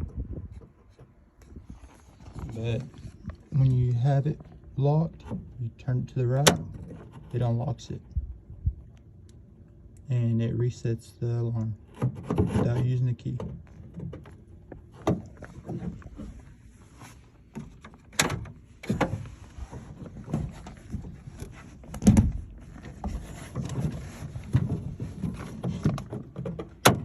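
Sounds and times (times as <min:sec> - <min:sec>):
door lock clicking and rattling: 0:17.6 - 0:19.1.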